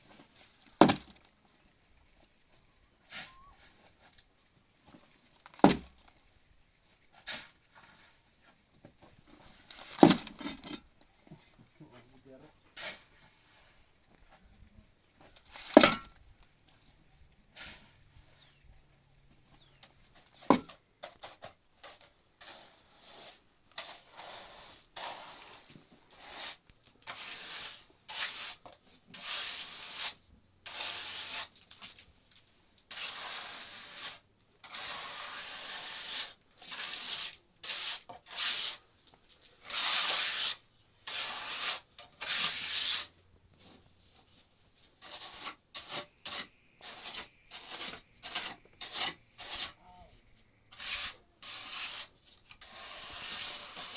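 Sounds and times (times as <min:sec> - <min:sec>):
irregular rubbing strokes: 0:21.2 - 0:32.0, 0:32.9 - 0:53.9.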